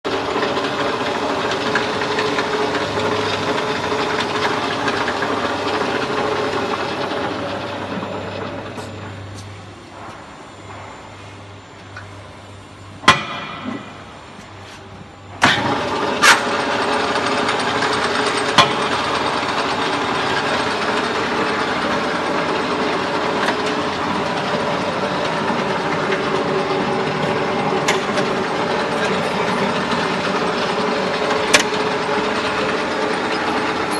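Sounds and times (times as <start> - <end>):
mini lathe running: 15.7 - 33.9.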